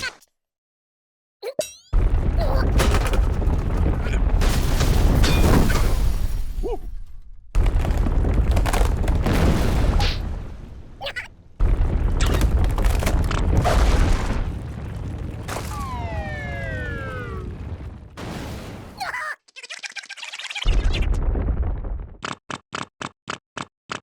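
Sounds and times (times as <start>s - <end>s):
deep rumbling crash: 2.0s - 19.0s, 20.7s - 22.2s
long falling whine: 15.7s - 17.6s.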